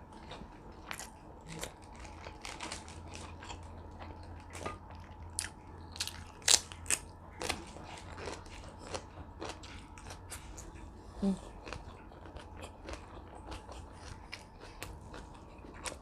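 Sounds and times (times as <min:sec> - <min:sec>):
crunchy food being chewed: 0:00.0 - 0:16.0.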